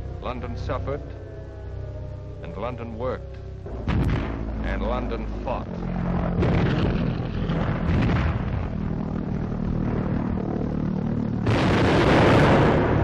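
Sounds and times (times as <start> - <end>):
steady low hum: 0.0 - 13.0
anti-aircraft guns firing: 3.7 - 5.2, 5.9 - 13.0.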